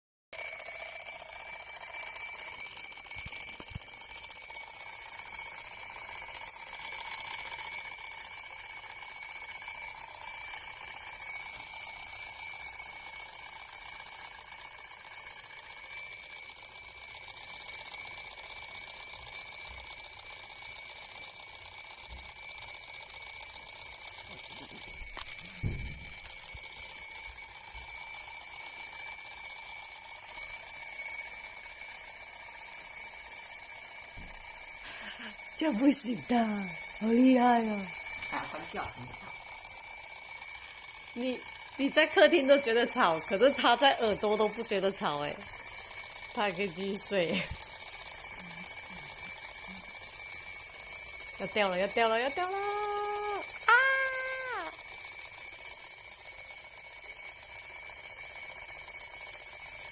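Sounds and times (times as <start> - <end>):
alarm clock ringing: 0.4 - 59.9.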